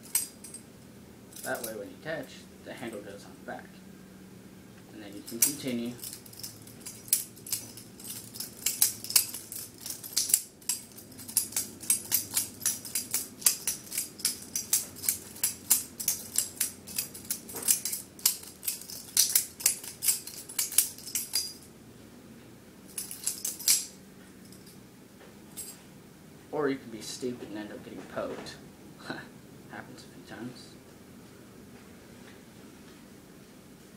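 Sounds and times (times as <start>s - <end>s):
butterfly knife clacking: 5.3s - 21.6s.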